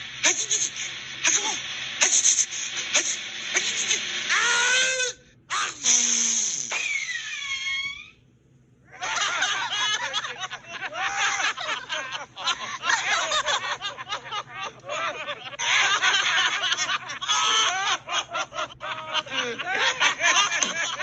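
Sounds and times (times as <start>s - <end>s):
cartoon voices laughing: 8.9s - 21.0s.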